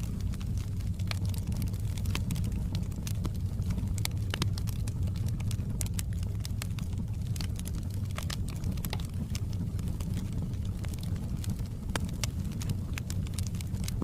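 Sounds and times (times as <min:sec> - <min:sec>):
low rumble of burning fire: 0:00.0 - 0:14.0
sharp pops and snaps: 0:00.0 - 0:14.0
wood fire crackling: 0:00.0 - 0:14.0.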